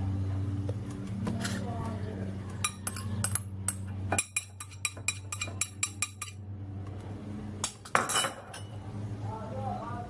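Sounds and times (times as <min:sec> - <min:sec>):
spoon clinking against bowl: 0:02.6 - 0:06.4.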